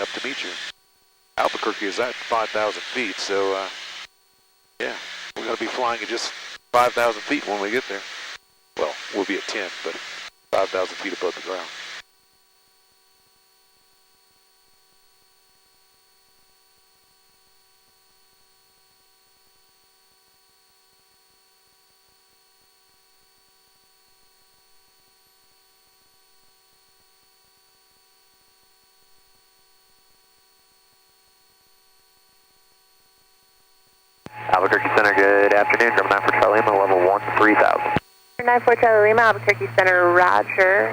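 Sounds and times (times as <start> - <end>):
faint electrical hum: 0.0 - 13.2, 31.3 - 40.9.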